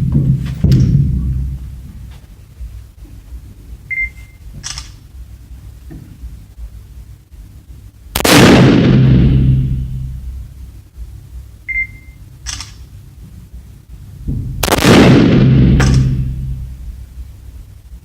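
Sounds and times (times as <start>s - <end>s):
loud gunshots ringing: 8.2s - 10.5s, 14.5s - 16.9s
sharp crack: 8.2s - 10.5s, 14.5s - 17.0s
short high beep: 11.7s - 12.2s.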